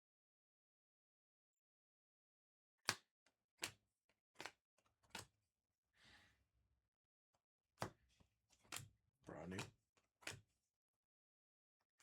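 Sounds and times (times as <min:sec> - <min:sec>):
sharp clicks of cards: 0:02.9 - 0:03.8, 0:04.4 - 0:05.3, 0:09.5 - 0:10.4.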